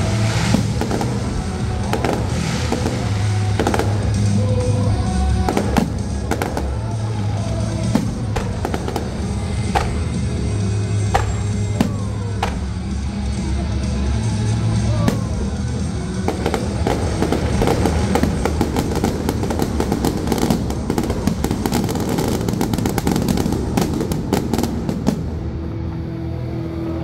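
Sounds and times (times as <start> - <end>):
fireworks crackling and banging: 0.0 - 25.8
music playing: 0.0 - 27.0.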